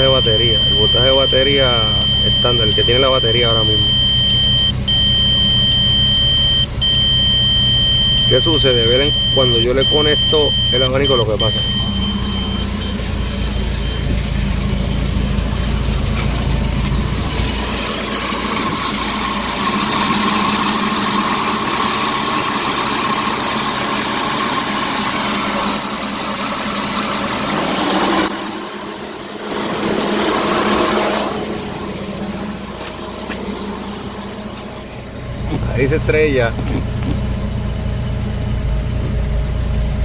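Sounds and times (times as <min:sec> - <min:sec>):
car engine running: 0:00.0 - 0:40.0
electric radiator fan rushing air: 0:11.8 - 0:34.9.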